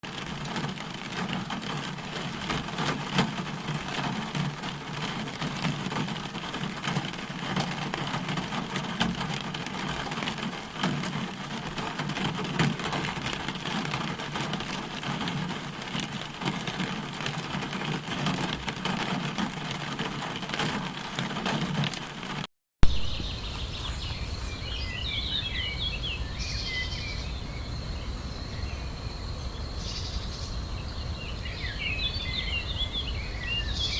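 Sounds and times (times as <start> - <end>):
birds chirping: 22.8 - 33.9.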